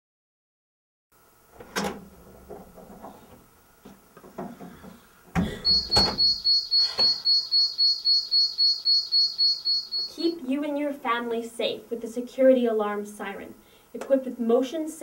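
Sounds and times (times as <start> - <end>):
security alarm siren: 5.5 - 10.4.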